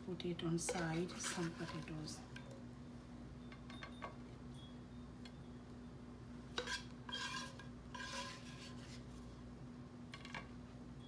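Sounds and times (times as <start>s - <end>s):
steady low hum: 0.0s - 11.0s
utensil scraping a pan: 0.6s - 2.2s, 6.5s - 9.2s.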